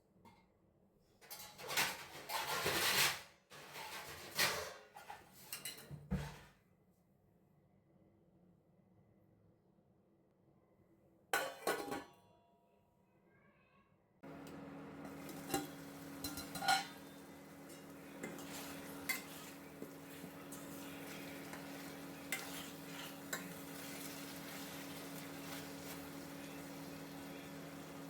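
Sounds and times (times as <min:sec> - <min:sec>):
utensil scraping pan: 0:01.6 - 0:05.6, 0:14.9 - 0:28.0
chicken sizzling in oil: 0:14.3 - 0:28.0.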